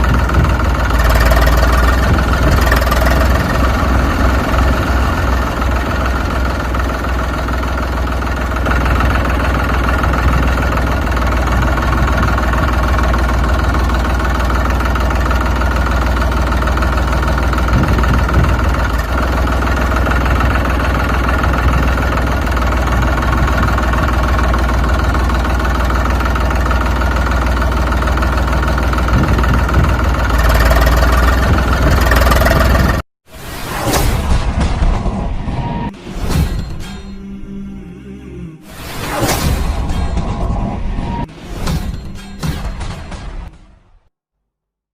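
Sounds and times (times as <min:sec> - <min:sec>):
tractor engine idling: 0:00.0 - 0:33.0.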